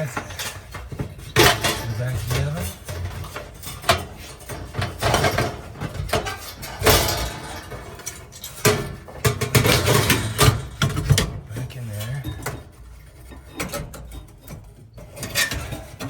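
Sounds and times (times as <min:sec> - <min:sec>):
metal scrape: 0:00.0 - 0:10.6
metal clanks: 0:00.0 - 0:16.0
metal oven parts knocking: 0:00.0 - 0:16.0.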